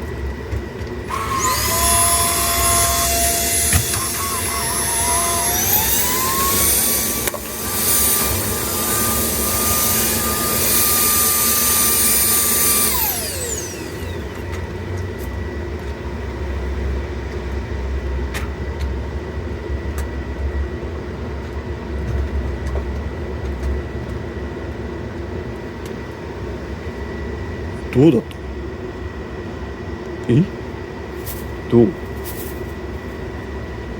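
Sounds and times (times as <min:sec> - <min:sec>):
vacuum cleaner motor whine: 0:00.1 - 0:16.2.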